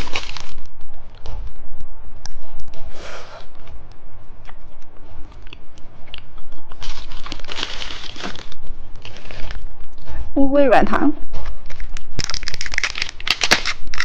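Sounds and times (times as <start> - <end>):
packaging crinkling: 0.0 - 0.6, 6.7 - 9.7, 11.6 - 14.0.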